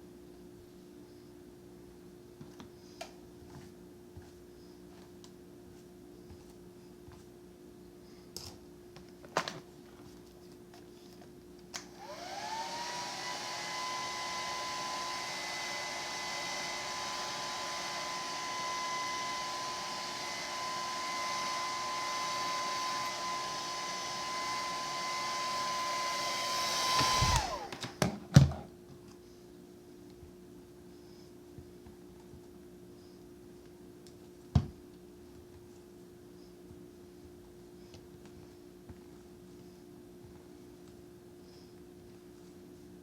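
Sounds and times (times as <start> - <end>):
blow dryer running: 11.8 - 28.1.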